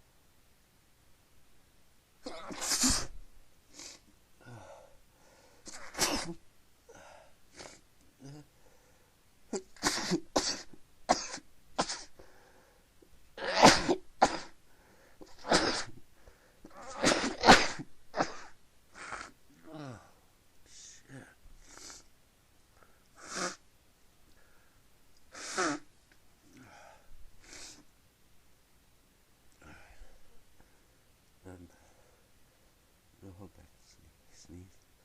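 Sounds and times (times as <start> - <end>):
person sneezing: 2.2 - 3.2, 5.7 - 6.4, 9.5 - 12.2, 13.4 - 14.6, 15.2 - 16.0, 16.7 - 20.0, 23.2 - 23.6, 25.3 - 25.9.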